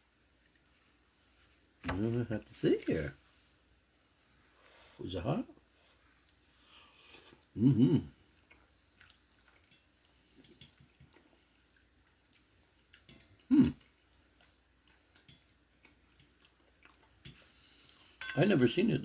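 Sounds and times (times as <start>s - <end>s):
person humming: 7.6s - 8.2s, 13.5s - 13.8s
person chewing food: 8.2s - 18.2s.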